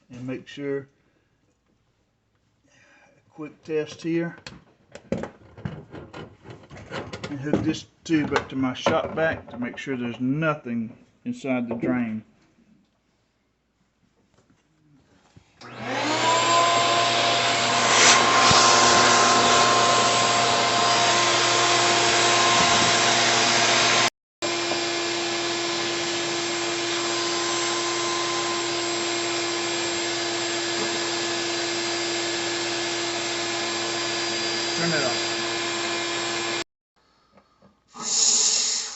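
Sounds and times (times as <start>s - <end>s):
shop vac motor whine: 15.6s - 36.6s.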